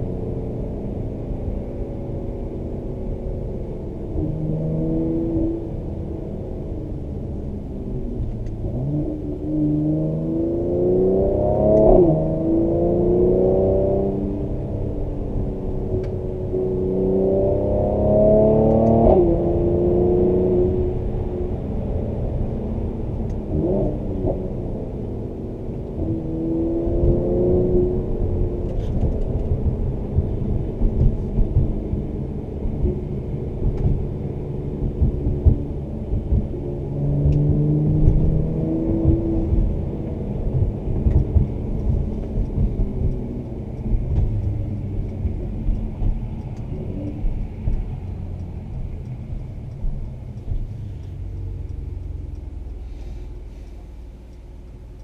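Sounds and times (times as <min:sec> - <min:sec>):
car engine revving: 0:04.0 - 0:55.0
exhaust pops and crackles: 0:28.6 - 0:55.0.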